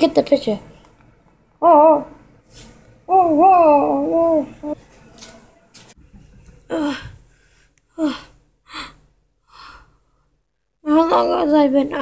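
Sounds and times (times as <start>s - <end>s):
person gasping: 6.7s - 10.0s.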